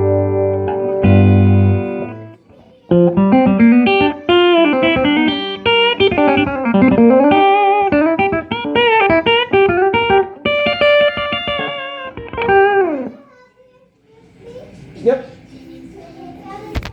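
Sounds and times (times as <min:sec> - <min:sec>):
electric guitar single notes with bends: 0:00.0 - 0:02.3, 0:02.9 - 0:13.1
electric guitar chords: 0:00.0 - 0:13.1.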